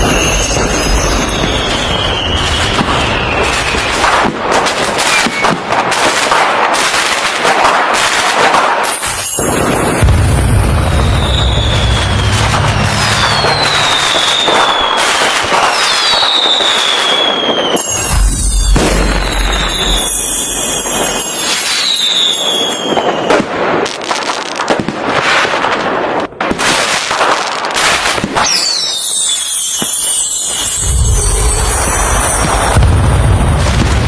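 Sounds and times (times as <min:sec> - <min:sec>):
whistling fireworks shells: 0:00.0 - 0:06.5, 0:07.5 - 0:24.8, 0:26.6 - 0:34.0
fireworks crackling and popping: 0:00.0 - 0:34.0
deep rumbling boom: 0:10.0 - 0:15.0, 0:18.0 - 0:20.7, 0:30.7 - 0:34.0.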